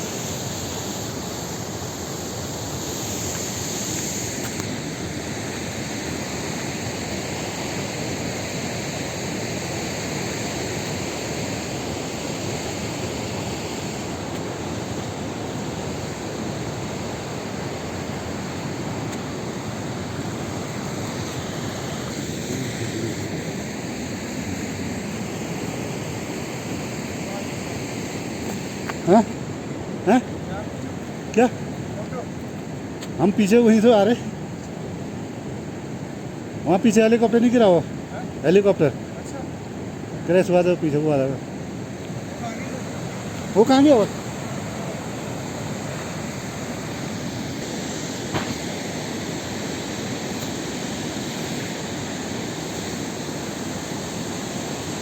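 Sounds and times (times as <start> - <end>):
steady rushing noise: 42.0 - 55.0.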